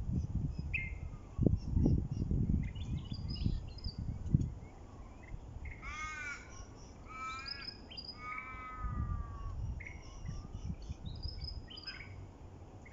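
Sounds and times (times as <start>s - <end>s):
wind on microphone: 0.0s - 5.8s, 8.5s - 11.8s
small birds chirping: 0.1s - 12.9s
large bird drawn-out calls: 5.7s - 10.6s.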